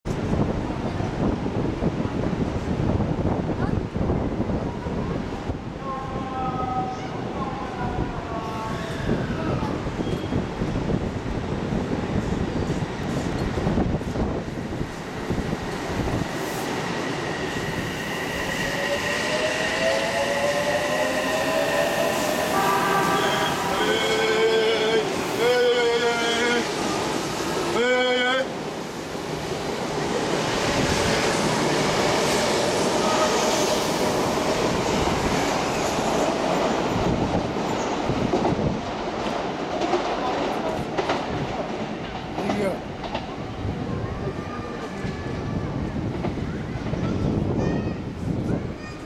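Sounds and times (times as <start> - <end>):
train wheels rumbling: 0.1 - 49.0
faint train whine: 12.2 - 29.2.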